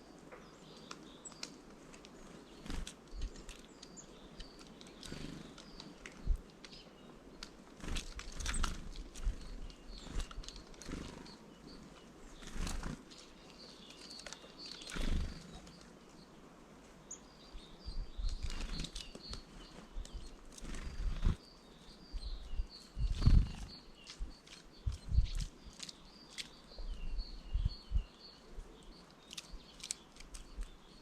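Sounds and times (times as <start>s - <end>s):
bird wings fluttering: 2.1s - 3.7s, 7.4s - 11.4s, 12.3s - 15.7s, 18.2s - 21.4s, 23.0s - 26.5s.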